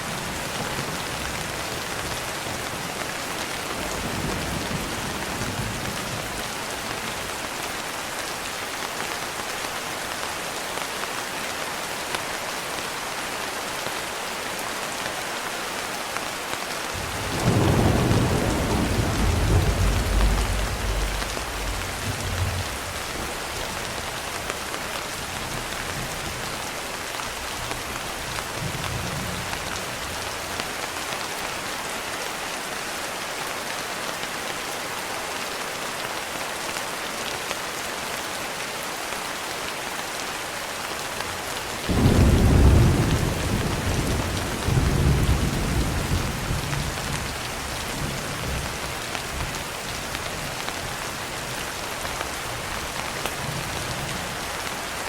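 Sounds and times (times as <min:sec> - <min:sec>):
thunder rumbling: 0:17.0 - 0:23.8, 0:41.9 - 0:47.4
rain hissing: 0:17.0 - 0:24.4.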